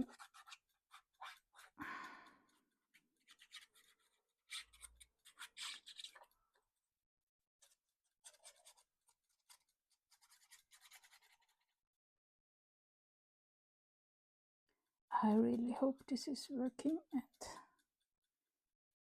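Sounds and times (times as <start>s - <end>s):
paper rubbing and scratching: 0.0s - 1.8s, 2.5s - 6.6s, 7.6s - 11.7s.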